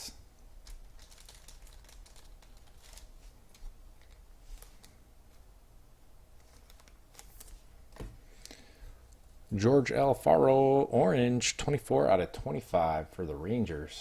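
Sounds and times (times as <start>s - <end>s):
cards rustling: 0.6s - 5.0s, 6.4s - 8.6s.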